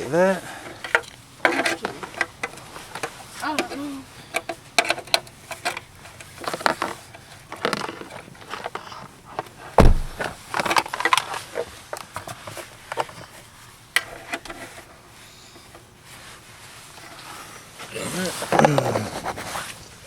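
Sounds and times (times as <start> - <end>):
rustling and scraping: 0.0 - 20.0
heavy thump: 9.8 - 10.4.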